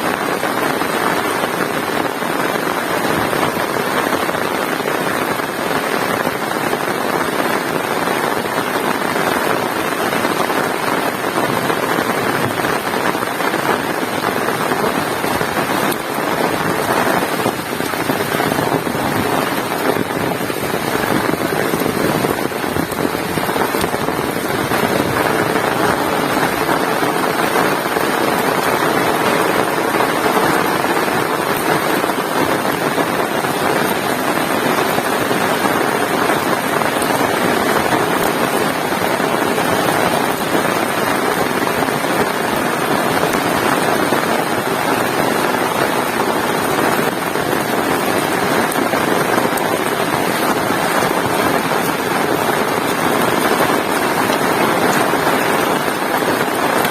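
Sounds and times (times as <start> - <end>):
heavy rain: 0.0 - 56.9.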